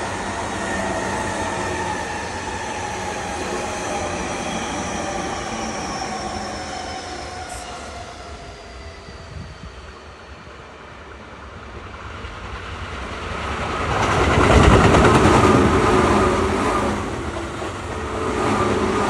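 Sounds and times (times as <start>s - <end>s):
train whining tones: 0.0s - 11.8s.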